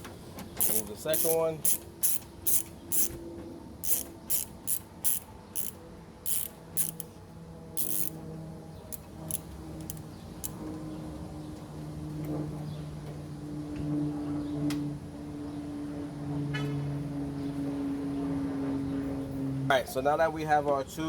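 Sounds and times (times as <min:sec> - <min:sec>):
ratchet wrench clicking: 0:00.6 - 0:03.2, 0:03.8 - 0:07.2, 0:07.8 - 0:08.2, 0:08.9 - 0:10.6.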